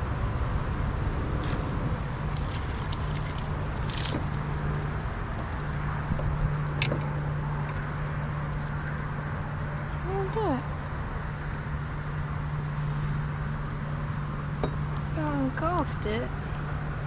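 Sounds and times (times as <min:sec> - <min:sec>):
wind rumbling on microphone: 0:00.0 - 0:12.0.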